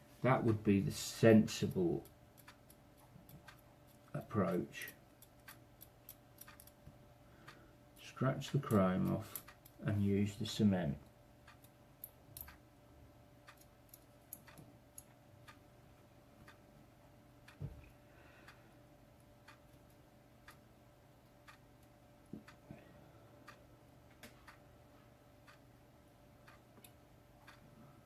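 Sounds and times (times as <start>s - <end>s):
clock ticking faintly: 0.2s - 12.8s, 13.4s - 28.0s.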